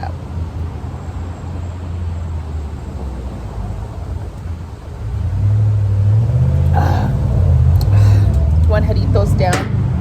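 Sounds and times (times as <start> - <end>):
motor vehicle engine rumble: 0.0 - 10.0.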